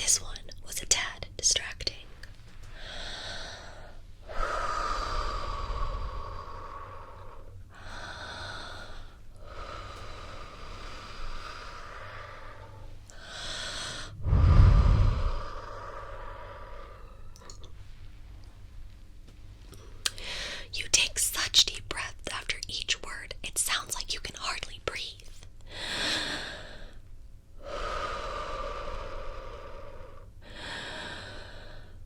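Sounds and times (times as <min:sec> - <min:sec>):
deep breathing close to microphone: 0:02.7 - 0:18.2, 0:20.1 - 0:20.7, 0:25.7 - 0:32.0
breath blowing onto microphone: 0:13.9 - 0:17.0.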